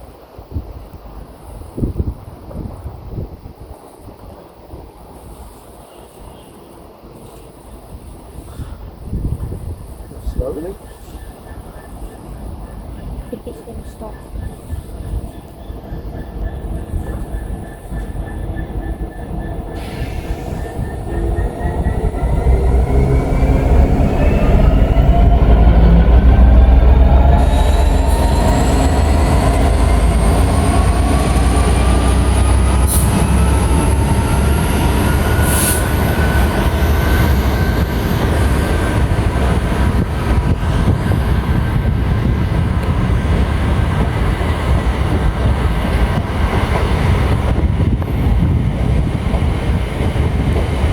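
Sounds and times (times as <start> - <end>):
train rumbling: 0.0 - 50.9
train whine rising in pitch: 14.0 - 50.9.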